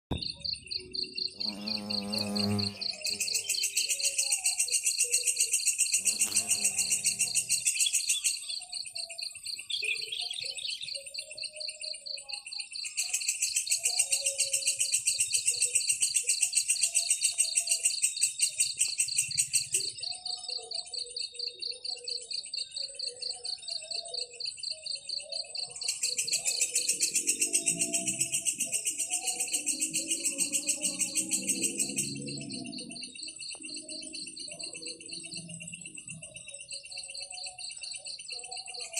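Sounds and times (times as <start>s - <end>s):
insects trilling: 0.1s - 38.9s
higher louder insect trill: 0.8s - 8.4s, 26.0s - 37.8s.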